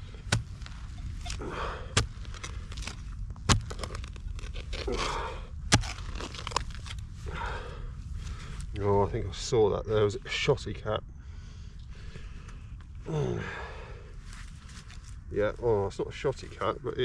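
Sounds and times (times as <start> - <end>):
scraping of earth: 0.0 - 9.4, 14.1 - 16.8.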